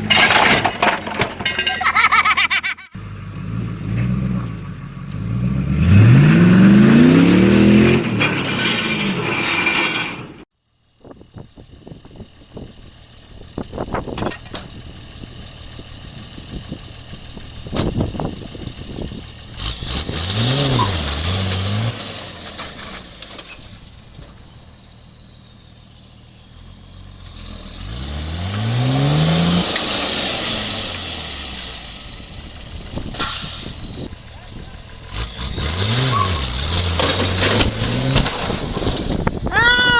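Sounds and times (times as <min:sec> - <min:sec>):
knocks and clatter: 0:00.0 - 0:02.0, 0:36.6 - 0:39.4
vehicle engine revving: 0:03.0 - 0:09.3, 0:15.3 - 0:23.0, 0:26.4 - 0:39.4.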